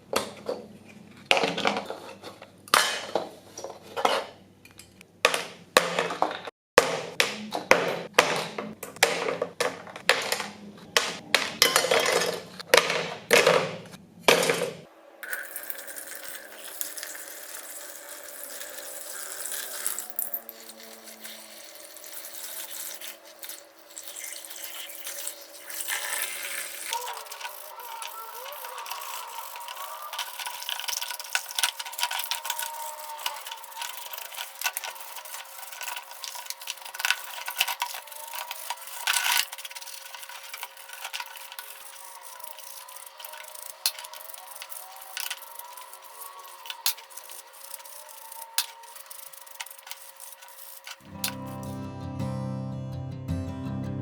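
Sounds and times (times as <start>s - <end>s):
running water: 15.2s - 51.1s
hand tool scraping workpiece: 16.5s - 51.8s
scattered clicks: 26.2s - 51.7s.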